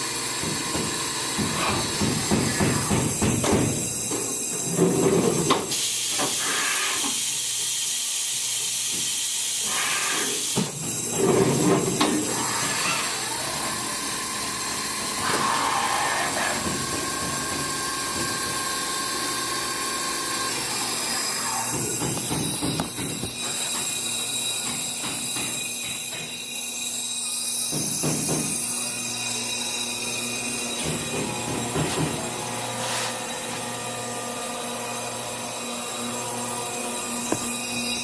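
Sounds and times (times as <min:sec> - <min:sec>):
milling machine hissing: 0:05.6 - 0:11.2, 0:11.8 - 0:30.8.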